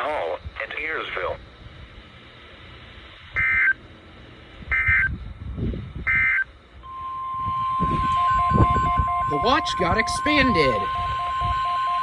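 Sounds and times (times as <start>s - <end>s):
steady alert tone: 6.9s - 12.0s
warbling digital data tones: 6.9s - 12.0s.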